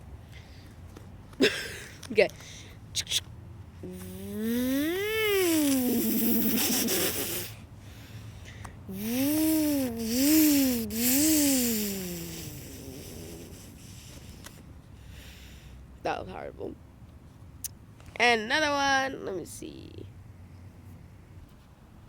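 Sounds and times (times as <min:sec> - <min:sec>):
person imitating car engine: 0:03.8 - 0:07.6, 0:08.9 - 0:14.6.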